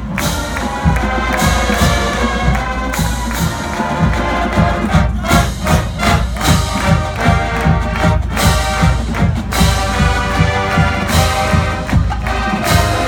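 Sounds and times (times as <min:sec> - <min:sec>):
bass and snare drums: 0:00.0 - 0:13.0
marching band playing: 0:00.0 - 0:13.0.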